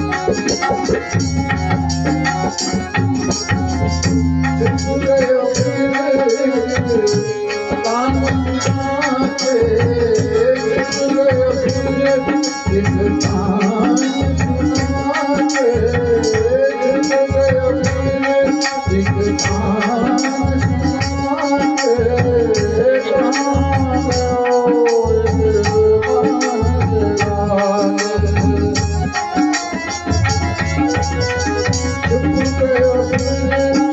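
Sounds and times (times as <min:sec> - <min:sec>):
drum beat: 0:00.0 - 0:05.8
sharp percussion strokes: 0:00.0 - 0:15.7
devotional singing: 0:04.4 - 0:29.2, 0:31.7 - 0:33.9.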